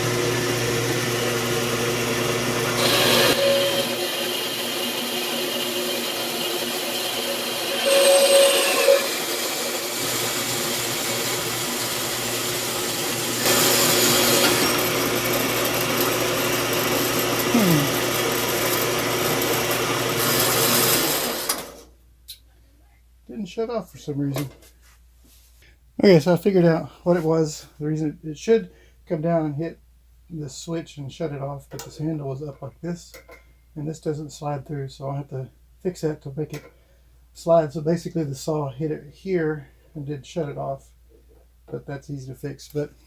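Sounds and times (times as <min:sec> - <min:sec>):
band saw cutting metal: 0:01.7 - 0:21.6.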